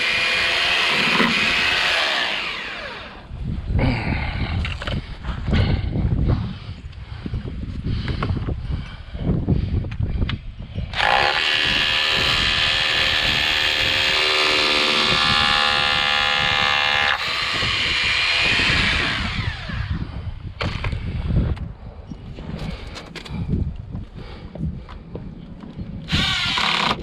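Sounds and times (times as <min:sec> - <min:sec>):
power drill running: 0:00.0 - 0:03.2, 0:10.9 - 0:20.0, 0:26.1 - 0:27.0.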